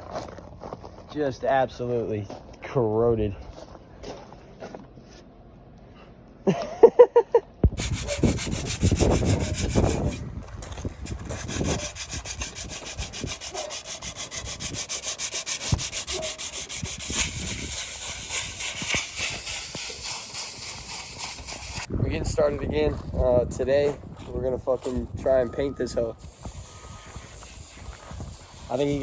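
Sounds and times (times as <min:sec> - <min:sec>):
sandpaper scraping metal: 0:07.8 - 0:10.2, 0:11.0 - 0:21.9, 0:26.2 - 0:29.0.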